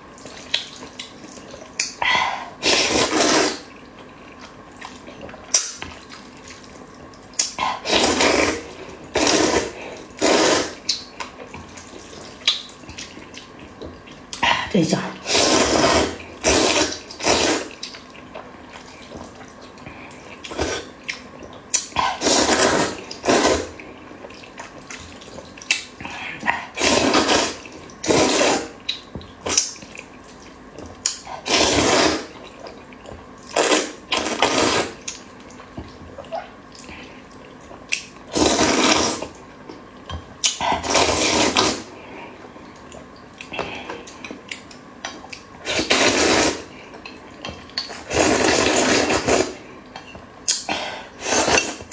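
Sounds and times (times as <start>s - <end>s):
noodles slurping: 2.6s - 6.4s, 7.4s - 11.0s, 15.2s - 19.3s, 21.7s - 24.0s, 25.7s - 28.9s, 31.1s - 32.6s, 33.4s - 35.1s, 38.2s - 39.4s, 40.4s - 42.0s, 45.6s - 46.9s, 47.8s - 49.8s, 50.5s - 51.9s.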